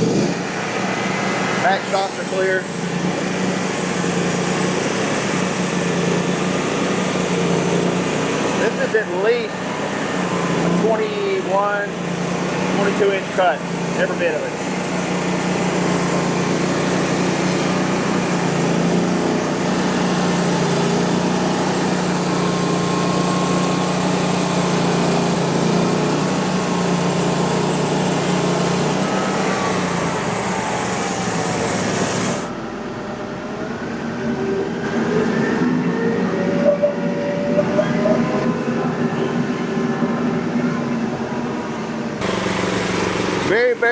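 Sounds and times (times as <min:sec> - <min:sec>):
band saw cutting log: 0:00.0 - 0:32.6, 0:42.2 - 0:43.9
sawmill engine running: 0:00.0 - 0:43.9
whine of sawmill: 0:00.0 - 0:43.9.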